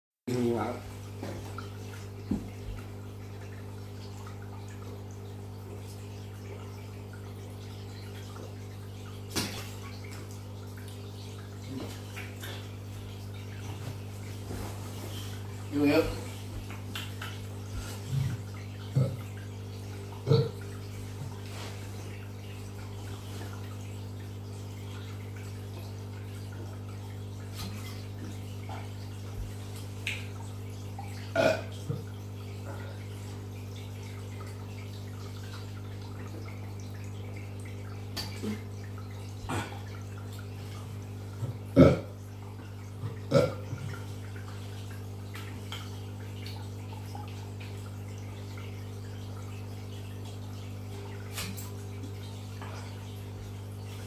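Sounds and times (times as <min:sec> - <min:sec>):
person burping: 0:18.9 - 0:19.3, 0:20.2 - 0:20.6, 0:31.3 - 0:31.8, 0:41.7 - 0:42.2, 0:43.3 - 0:43.7.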